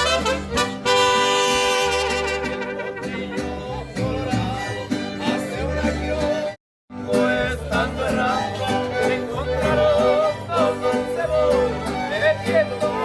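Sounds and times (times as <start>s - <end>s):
band playing melodic lead: 0.0s - 3.6s.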